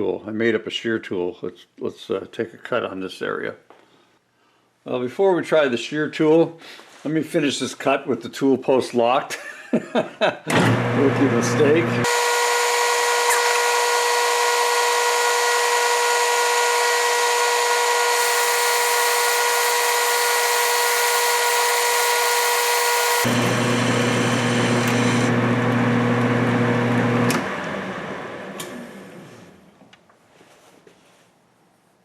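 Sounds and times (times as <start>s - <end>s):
metal lathe whining: 10.5s - 27.5s
lathe winding down: 10.5s - 29.6s.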